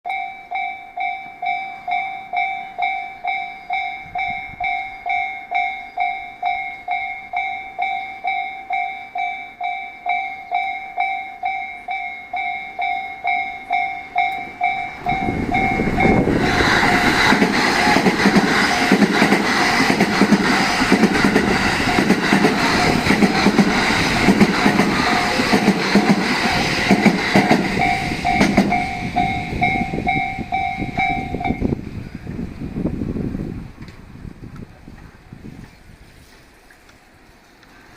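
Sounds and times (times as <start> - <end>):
level-crossing warning bell: 0.1 - 31.8
electric train rumbling: 0.1 - 37.9
rhythmic wheel clatter: 14.2 - 31.6.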